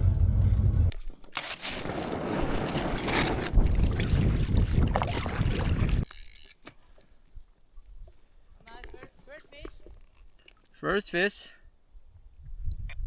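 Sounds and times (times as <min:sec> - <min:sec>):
wind buffeting microphone: 0:03.4 - 0:06.1, 0:12.0 - 0:13.0.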